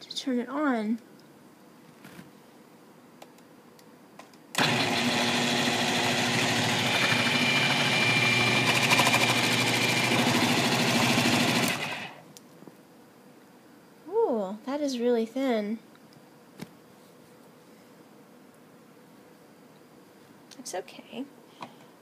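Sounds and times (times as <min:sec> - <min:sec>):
food processor motor running: 0:04.6 - 0:12.2.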